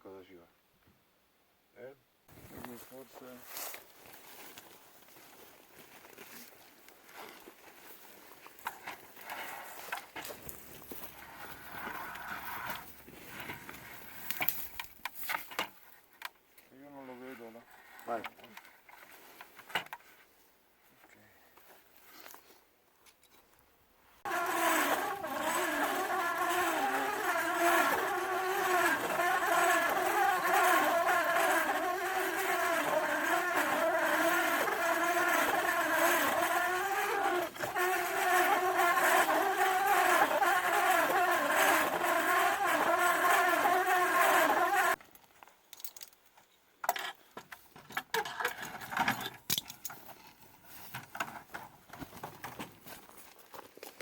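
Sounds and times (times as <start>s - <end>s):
faint clicks and scrapes: 8.4s - 20.3s
machine motor whining: 24.3s - 45.0s.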